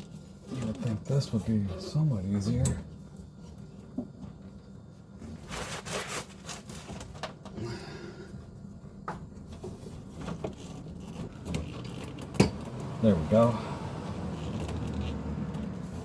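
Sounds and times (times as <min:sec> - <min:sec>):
scraping rustle: 0:05.3 - 0:07.2.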